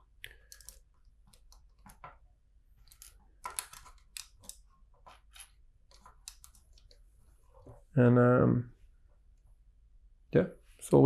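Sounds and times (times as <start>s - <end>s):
plastic bricks clicking together: 0.2s - 2.0s, 2.8s - 4.6s.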